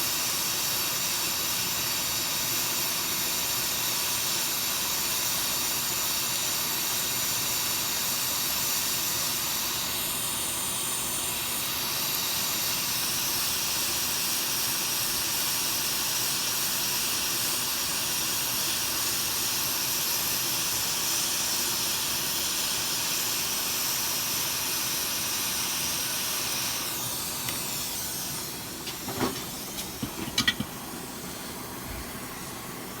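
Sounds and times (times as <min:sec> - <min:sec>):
blowing air hiss: 0:19.8 - 0:33.0.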